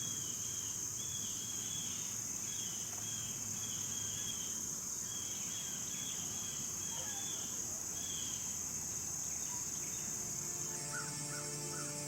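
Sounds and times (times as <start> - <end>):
crickets trilling: 0.0 - 12.0
lower short insect chirp: 0.0 - 12.0.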